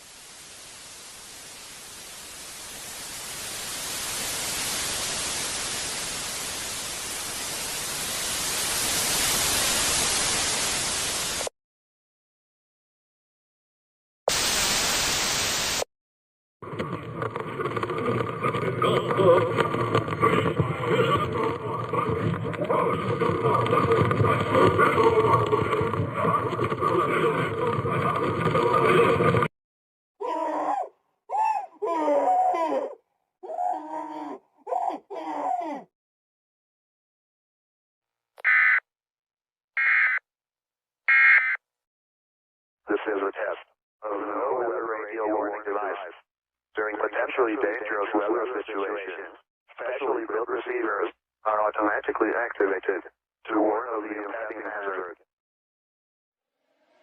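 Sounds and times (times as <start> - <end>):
static hiss: 0.0 - 11.5, 14.3 - 15.9
harsh creature noise: 17.8 - 29.5.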